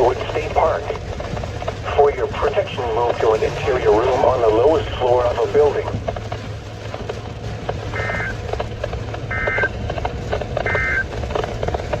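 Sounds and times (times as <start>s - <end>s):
low hum: 0.0s - 12.0s
digital data tone bursts: 8.0s - 8.3s, 9.3s - 9.7s, 10.6s - 11.1s.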